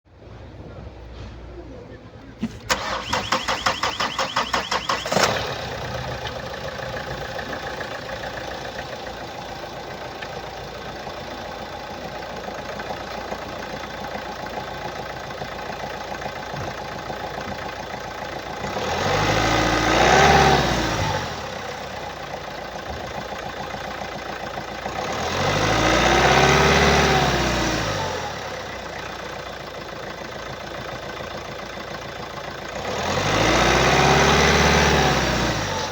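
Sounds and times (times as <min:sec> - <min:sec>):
diesel engine idling and revving: 0:00.1 - 0:35.9
diesel engine starter cranking: 0:02.2 - 0:18.7.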